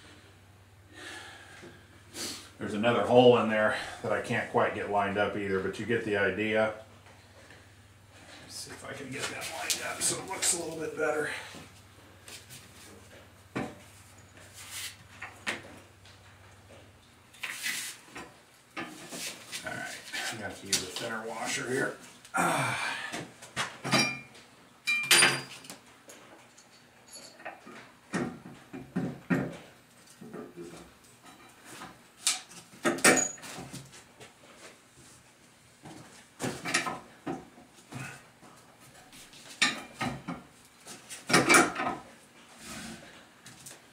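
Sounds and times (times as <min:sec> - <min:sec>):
metal bolts and tools clinking: 0:24.9 - 0:25.7, 0:26.5 - 0:27.7, 0:32.8 - 0:33.6.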